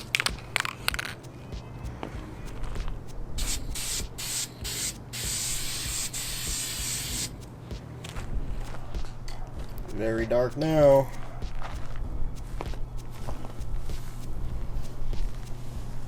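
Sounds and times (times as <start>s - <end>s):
aerosol paint can spraying: 3.4s - 7.4s.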